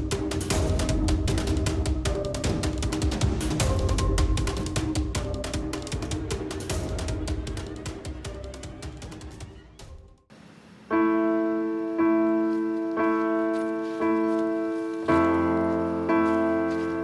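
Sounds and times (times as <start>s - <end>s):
slow piano chords: 10.9s - 17.0s.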